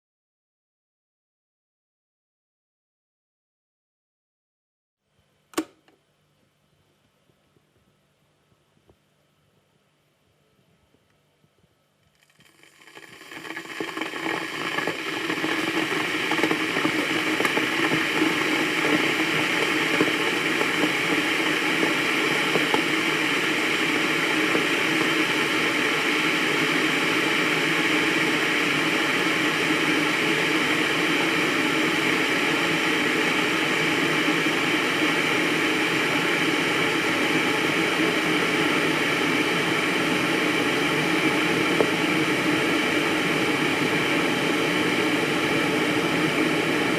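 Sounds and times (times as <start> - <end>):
electric kettle heating water: 5.5 - 6.0, 11.1 - 46.9.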